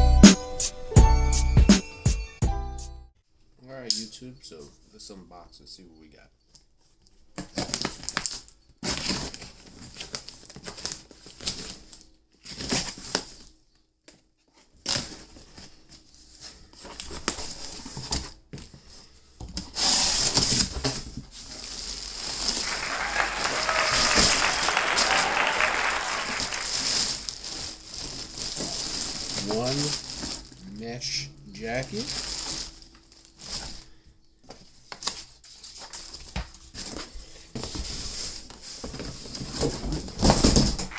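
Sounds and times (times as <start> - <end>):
plastic wrapping crinkling: 20.1 - 30.8, 31.6 - 34.0
packaging tearing: 26.4 - 30.6.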